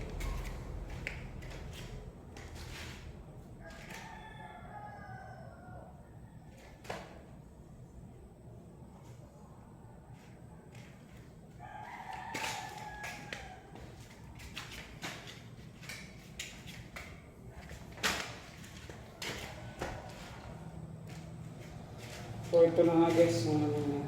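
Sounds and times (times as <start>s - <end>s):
rooster crowing: 3.5s - 6.9s, 11.5s - 14.3s, 18.8s - 24.0s.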